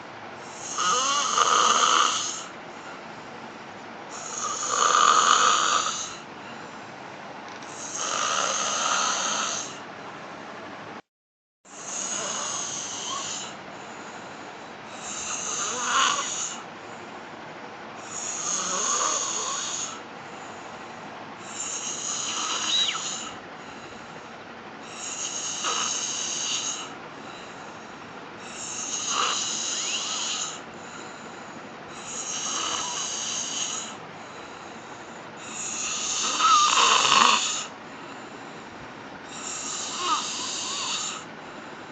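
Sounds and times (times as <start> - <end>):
woman snoring: 0.4 - 2.6, 4.1 - 6.3, 7.7 - 9.8, 11.7 - 13.6, 14.9 - 16.7, 18.0 - 20.0, 21.4 - 23.4, 24.8 - 27.6, 28.4 - 31.2, 31.9 - 34.7, 35.4 - 37.8, 39.3 - 41.3.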